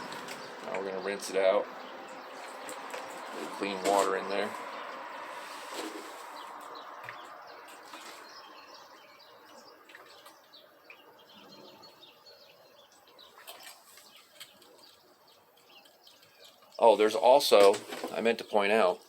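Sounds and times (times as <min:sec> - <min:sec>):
birds chirping: 0:00.0 - 0:19.0
water pouring and splashing: 0:02.1 - 0:08.6, 0:13.2 - 0:15.1.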